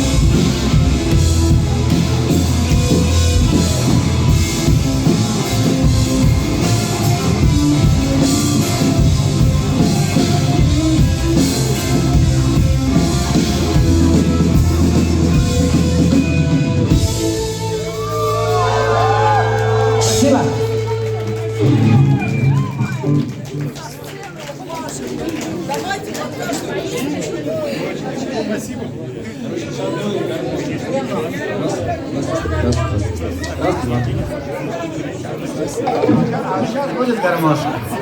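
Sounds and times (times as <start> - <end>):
drum kit: 0.0 - 23.6
electric guitar: 0.0 - 23.8.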